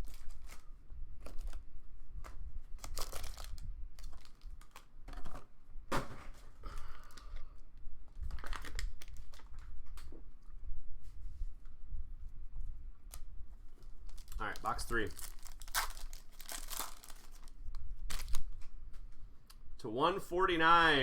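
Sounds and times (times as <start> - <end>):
plastic wrap crinkling: 0.0 - 1.6, 2.8 - 5.4, 8.2 - 9.7, 13.8 - 18.7.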